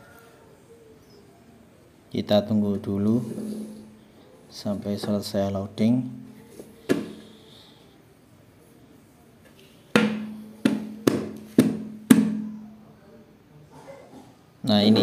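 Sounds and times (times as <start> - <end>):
sharp knocks: 10.0 - 12.7.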